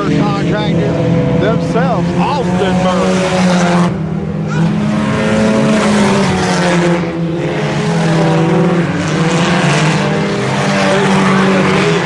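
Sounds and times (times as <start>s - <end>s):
race car engines at high revs: 0.0s - 12.0s.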